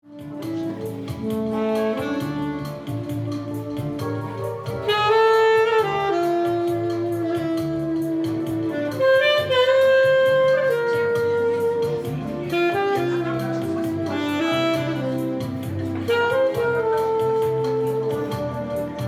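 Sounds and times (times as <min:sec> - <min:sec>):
slow melody over steady beat: 0:00.0 - 0:19.0.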